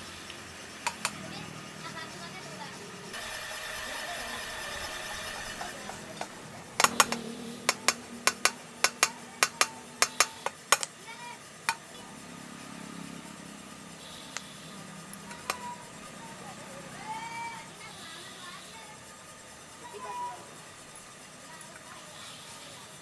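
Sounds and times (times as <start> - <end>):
metal-on-metal clinks: 6.2 - 10.9.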